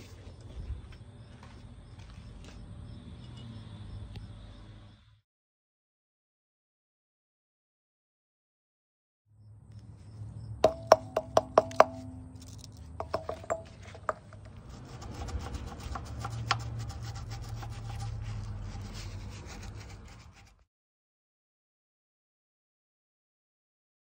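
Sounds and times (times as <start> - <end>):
metal scraping and rubbing: 10.6 - 20.6.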